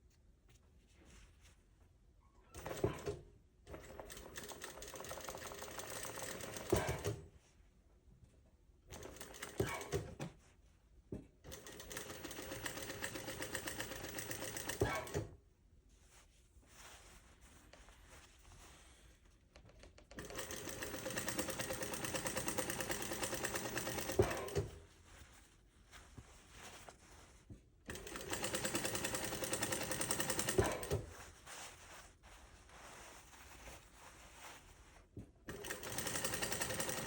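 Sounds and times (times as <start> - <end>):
sewing machine stitching: 2.6 - 7.2, 8.9 - 10.3, 11.5 - 15.3, 19.9 - 24.8, 27.9 - 31.2, 35.4 - 37.0
sewing machine stopping knock: 35.5 - 37.0.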